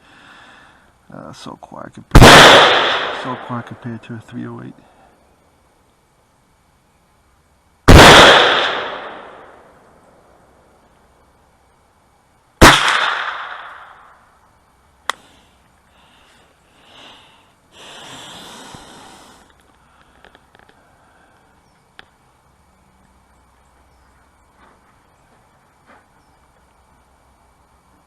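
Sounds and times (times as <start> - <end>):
sharp crack: 2.1 - 3.8, 7.9 - 9.7, 12.6 - 14.2, 15.0 - 15.3
rifle shot with echo: 2.2 - 3.6, 7.9 - 9.6, 12.6 - 14.0
faint clicks: 19.4 - 22.2.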